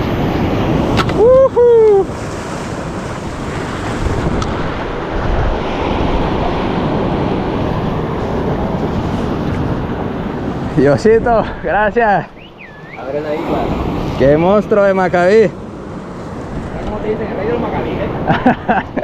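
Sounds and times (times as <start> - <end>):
waves and surf: 0.0 - 19.0
wind buffeting microphone: 0.0 - 19.0
person whooping: 1.2 - 2.1.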